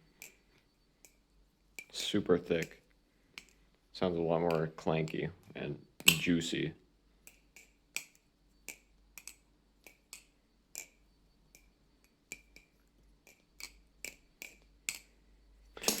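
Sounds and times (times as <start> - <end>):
butterfly knife handles clacking: 4.4 - 5.3, 6.0 - 6.4, 7.3 - 15.1, 15.8 - 16.0.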